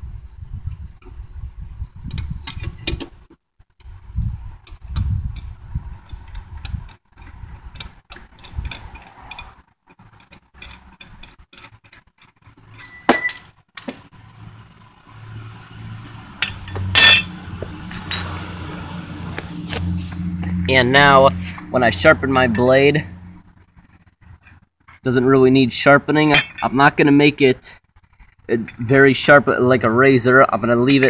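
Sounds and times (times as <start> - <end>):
wrench clicking on steel parts: 6.1 - 14.0
ringing metal clank: 12.8 - 14.0, 16.4 - 17.4, 18.0 - 18.5.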